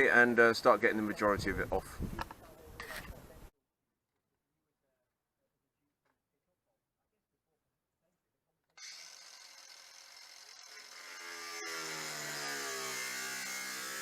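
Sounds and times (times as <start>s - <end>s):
power tool cutting sheet metal: 8.8s - 14.0s.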